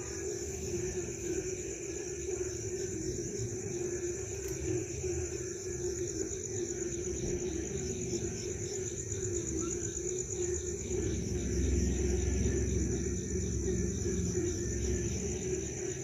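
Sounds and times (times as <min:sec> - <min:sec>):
crickets trilling: 0:00.0 - 0:16.0
frogs chorus: 0:00.0 - 0:16.0
low rumble: 0:10.3 - 0:16.0.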